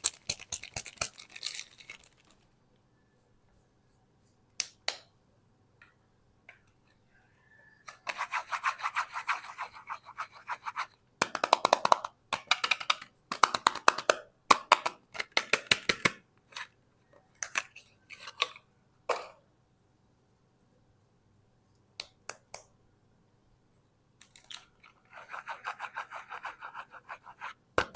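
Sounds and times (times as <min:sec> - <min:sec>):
soap packaging crinkling: 0:00.0 - 0:02.5.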